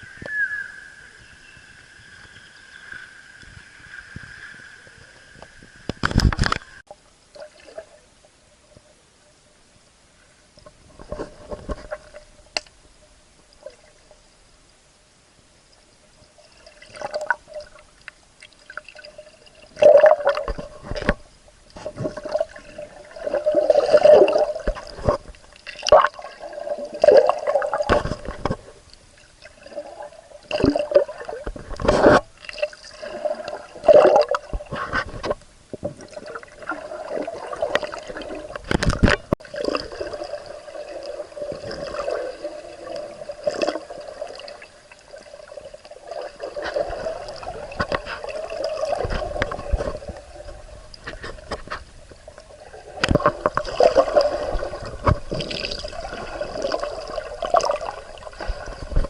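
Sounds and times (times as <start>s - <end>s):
water splashing and gurgling: 16.4s - 59.0s.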